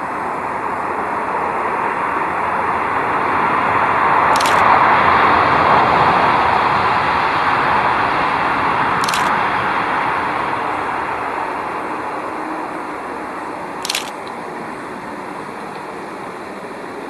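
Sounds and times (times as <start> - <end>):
car passing in distance: 0.0 - 17.0
camera shutter clicks: 4.4 - 4.6, 9.0 - 9.4, 13.8 - 14.4.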